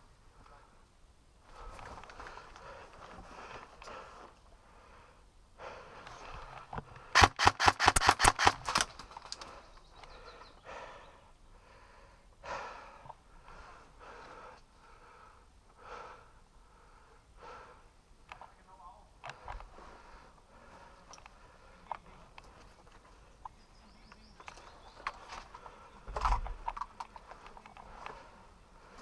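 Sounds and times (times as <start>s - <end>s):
airsoft gun shots: 7.2s - 8.9s.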